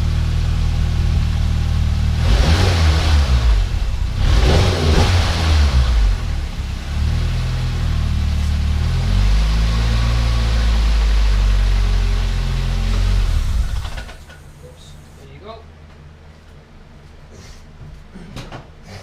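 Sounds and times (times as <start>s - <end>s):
car engine revving: 0.0s - 14.2s
car engine idling: 0.0s - 15.2s.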